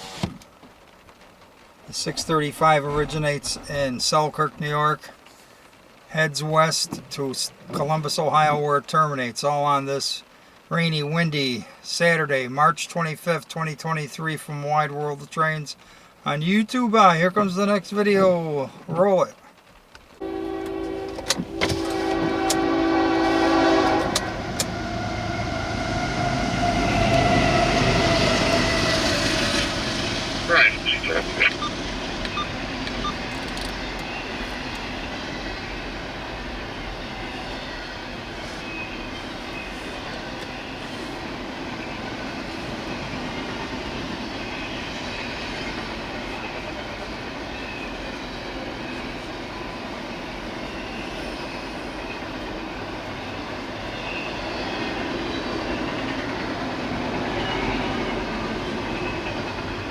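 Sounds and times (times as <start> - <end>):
train passing with wheel clicks: 19.5 - 59.9
locomotive horn chord: 20.2 - 33.3.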